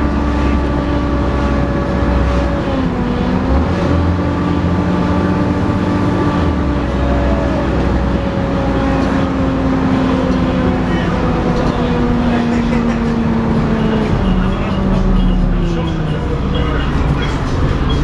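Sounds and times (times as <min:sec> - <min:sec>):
bus engine rumble: 0:00.0 - 0:18.0
steady high whine: 0:09.2 - 0:18.0.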